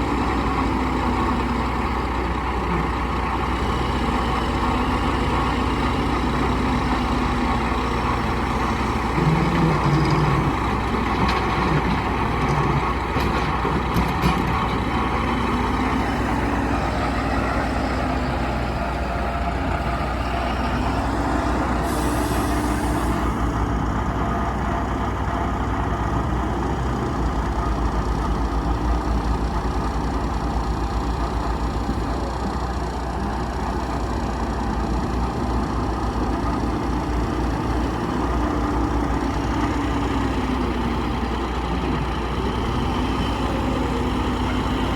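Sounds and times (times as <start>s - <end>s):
diesel engine revving: 33.2s - 44.9s.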